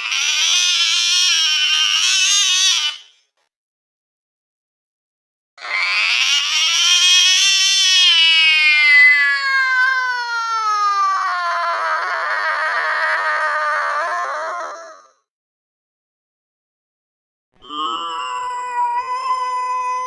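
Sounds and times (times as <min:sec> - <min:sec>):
angry cat yowling: 0:05.6 - 0:15.2, 0:17.9 - 0:20.0.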